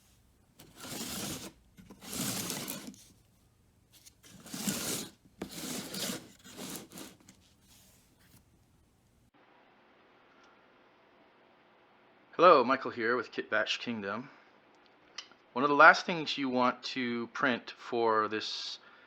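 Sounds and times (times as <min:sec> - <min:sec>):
rubbing or scraping noise: 0:00.0 - 0:08.6.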